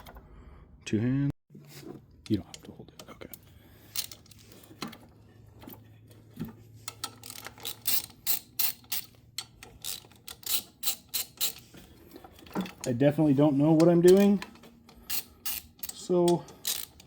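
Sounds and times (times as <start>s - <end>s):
ratchet wrench clicking: 6.9s - 11.7s, 15.0s - 17.0s.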